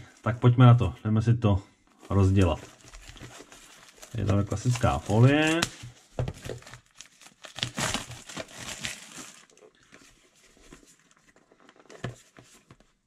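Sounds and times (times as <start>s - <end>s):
plastic shrink-wrap crinkling: 2.1s - 9.9s.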